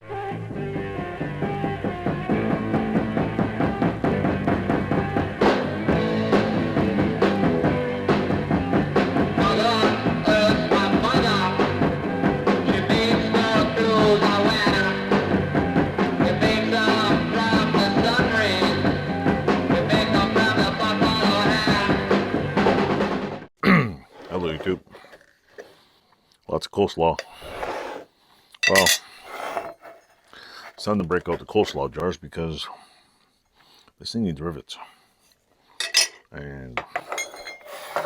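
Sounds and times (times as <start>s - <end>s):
rock music with drum beat: 0.6s - 23.3s.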